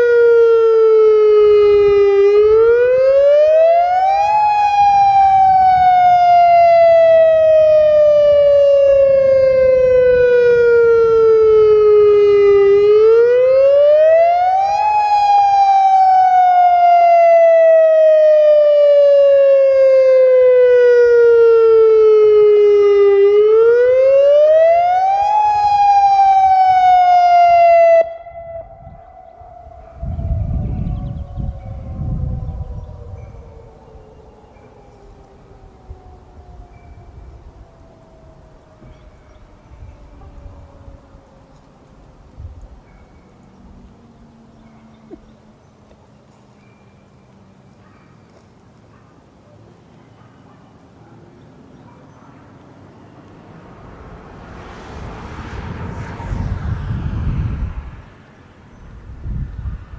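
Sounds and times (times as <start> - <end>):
warning siren wailing: 0.0 - 47.4, 52.9 - 58.1.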